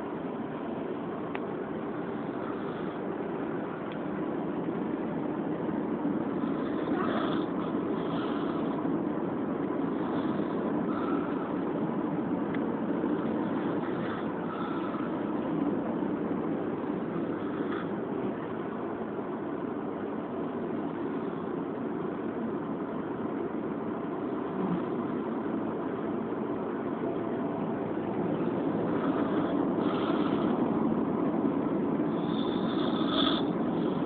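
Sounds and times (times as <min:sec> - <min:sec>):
man snoring: 0:06.4 - 0:08.8, 0:09.9 - 0:11.5, 0:13.1 - 0:15.3, 0:17.0 - 0:18.0, 0:28.5 - 0:30.6, 0:32.1 - 0:34.0.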